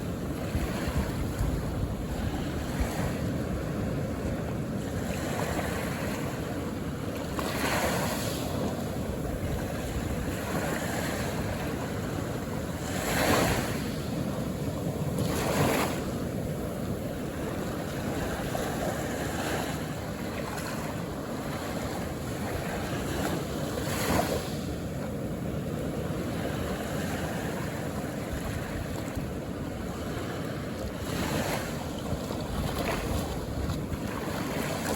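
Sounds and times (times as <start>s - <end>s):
ocean surf washing ashore: 0.0s - 34.9s
waves breaking: 0.0s - 34.9s.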